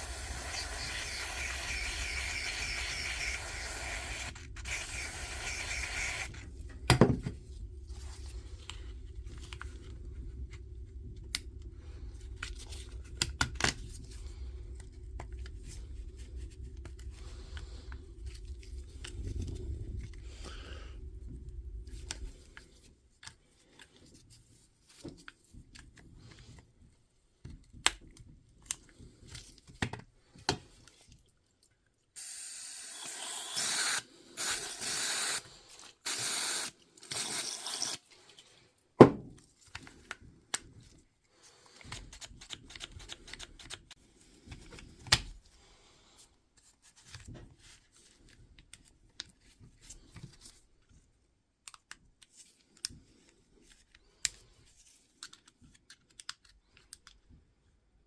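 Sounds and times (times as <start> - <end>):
aerosol spray hissing: 0.0 - 6.3, 32.2 - 35.4.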